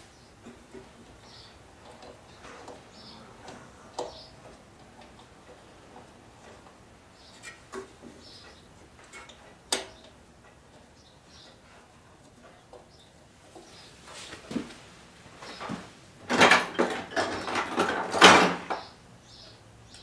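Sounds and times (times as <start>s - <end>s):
tools clicking and knocking: 16.3s - 18.9s.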